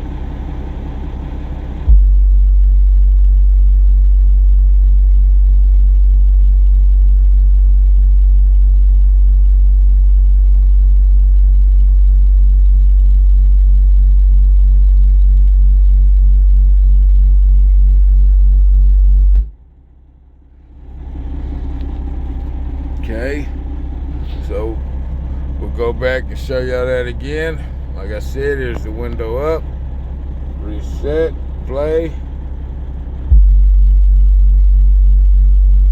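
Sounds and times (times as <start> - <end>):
faint pulsing buzz: 0.0 - 35.9
subwoofer bass test tone: 0.0 - 35.9.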